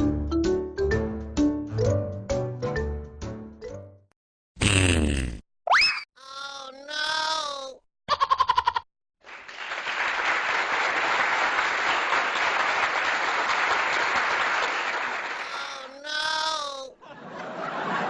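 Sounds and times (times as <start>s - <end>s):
buzzing fart sound: 4.6s - 5.4s
applause: 9.2s - 15.8s.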